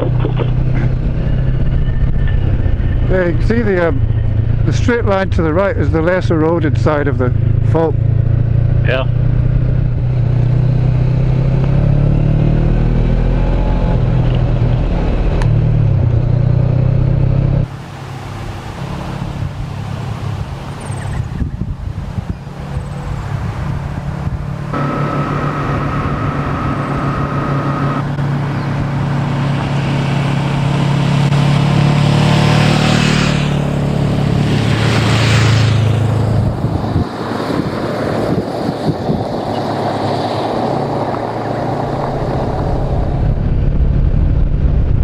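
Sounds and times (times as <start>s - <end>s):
motorcycle engine running: 0.0s - 11.6s, 21.6s - 37.2s
wind and road noise: 0.0s - 45.0s.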